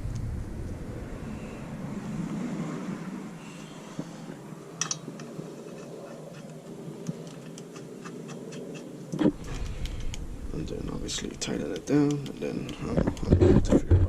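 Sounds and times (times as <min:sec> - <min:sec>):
metallic clicks and taps: 0:11.2 - 0:13.3.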